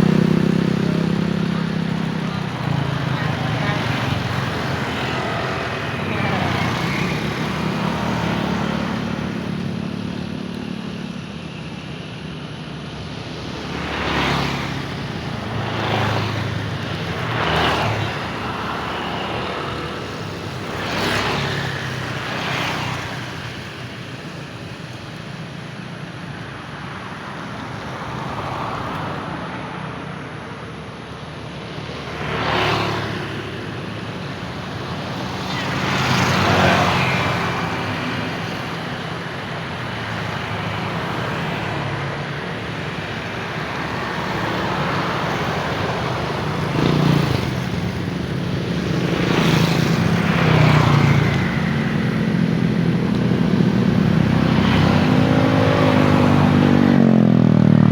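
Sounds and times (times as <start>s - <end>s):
vehicles passing by: 0.0s - 57.9s.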